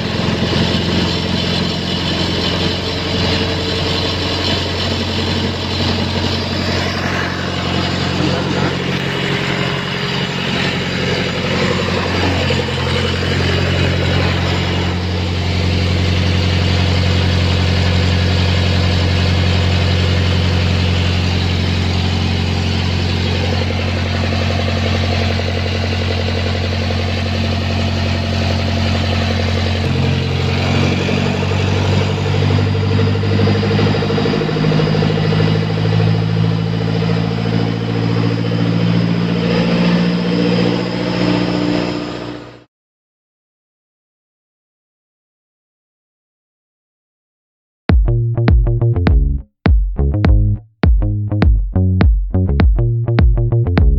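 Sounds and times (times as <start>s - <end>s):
diesel engine running: 0.0s - 42.7s.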